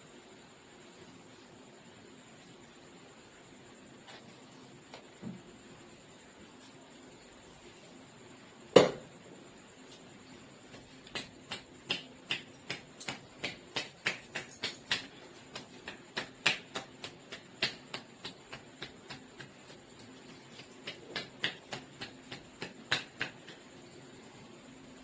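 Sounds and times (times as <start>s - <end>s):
hands tapping on a head: 10.7s - 23.7s.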